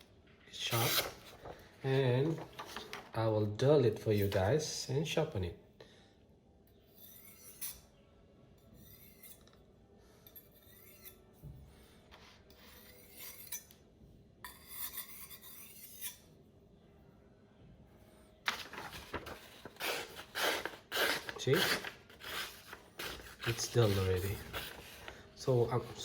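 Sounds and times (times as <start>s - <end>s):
knife scraping a hard surface: 6.8s - 8.0s, 8.7s - 9.6s, 10.2s - 11.3s, 12.1s - 13.8s, 14.4s - 16.3s, 18.5s - 26.0s.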